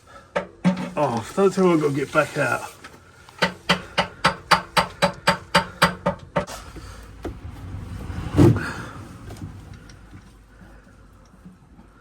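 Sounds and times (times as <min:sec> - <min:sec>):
rapid evenly spaced knocks: 0:03.4 - 0:06.5
heavy thump: 0:06.7 - 0:10.2.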